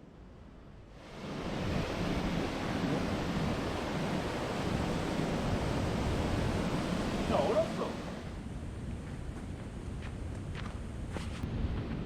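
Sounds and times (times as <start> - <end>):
mountain stream rushing: 1.0 - 8.4.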